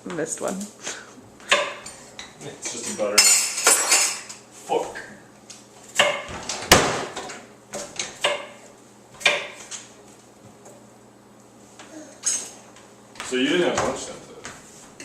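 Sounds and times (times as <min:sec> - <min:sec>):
dishes and silverware clattering: 0:01.5 - 0:04.4, 0:12.2 - 0:12.6.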